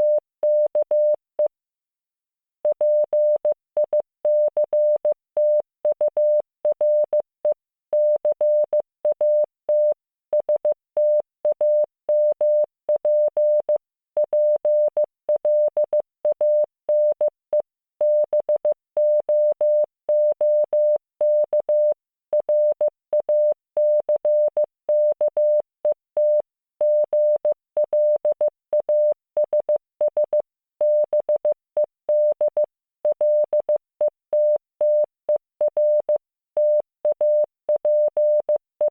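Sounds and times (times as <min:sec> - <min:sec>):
morse code beeps: 0:00.0 - 0:01.2, 0:02.7 - 0:07.2, 0:18.0 - 0:25.6, 0:26.2 - 0:38.9.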